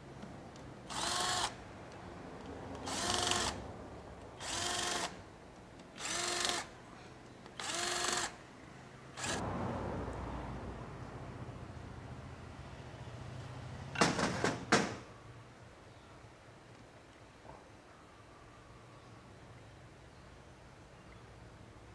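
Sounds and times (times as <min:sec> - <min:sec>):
drill-driver whirring: 0:00.9 - 0:01.6, 0:02.9 - 0:03.6, 0:04.4 - 0:05.2, 0:06.0 - 0:06.7, 0:07.6 - 0:08.4.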